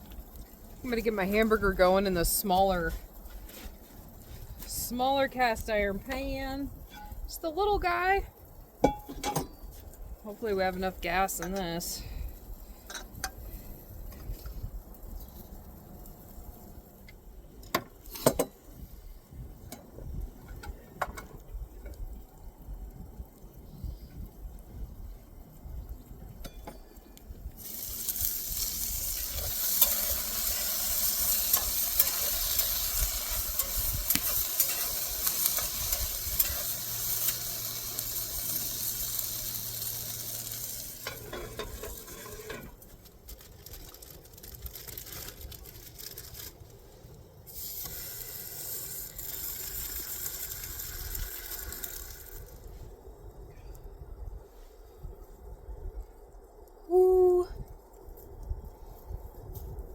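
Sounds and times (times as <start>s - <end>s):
meat sizzling in a pan: 27.6s - 42.7s, 47.5s - 52.6s.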